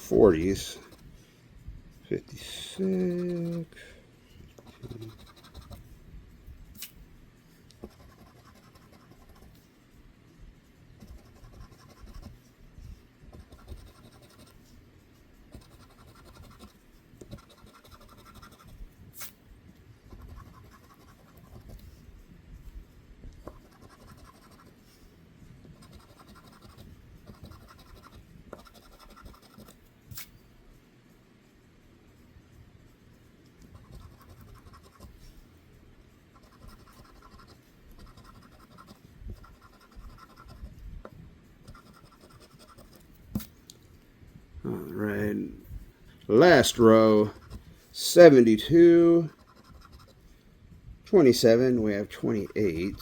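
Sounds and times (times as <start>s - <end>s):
scratching lottery ticket: 0.0s - 1.2s, 2.3s - 3.9s, 4.5s - 5.9s, 7.8s - 9.7s, 10.8s - 12.5s, 13.2s - 14.8s, 15.4s - 18.8s, 20.0s - 22.1s, 23.4s - 25.0s, 25.6s - 29.8s, 33.0s - 35.4s, 36.3s - 40.8s, 41.6s - 43.1s, 46.3s - 50.3s, 51.1s - 53.0s.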